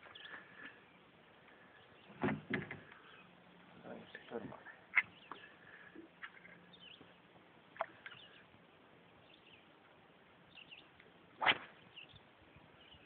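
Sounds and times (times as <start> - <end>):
faint bird chirps: 0.0 - 2.2, 2.8 - 8.5, 11.7 - 13.0.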